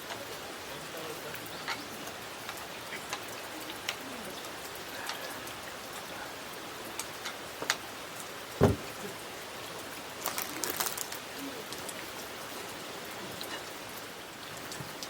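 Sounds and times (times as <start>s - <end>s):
steady rain falling: 0.0s - 15.0s
loud thud: 8.6s - 9.0s.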